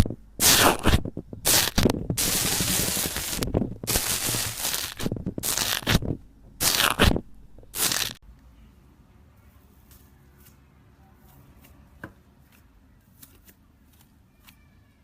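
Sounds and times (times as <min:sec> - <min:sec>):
slime crackling and crunching: 0:00.0 - 0:08.2.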